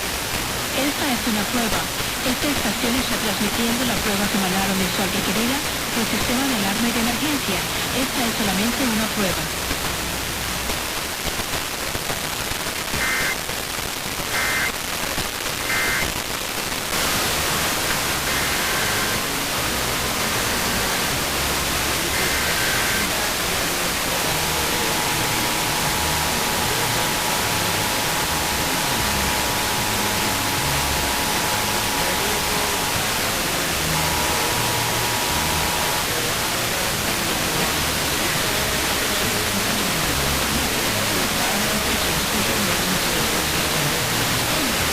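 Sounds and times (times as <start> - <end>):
radio static hiss: 0.0 - 44.9
short data bursts: 12.7 - 16.3, 16.9 - 19.4, 20.4 - 36.5.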